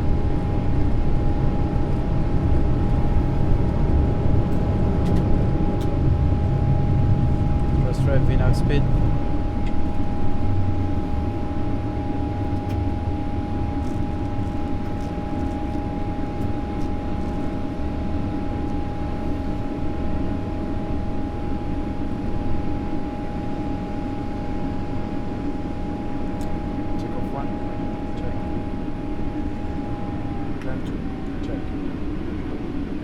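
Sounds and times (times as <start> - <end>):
jet engines and airflow rumble: 0.0 - 33.0.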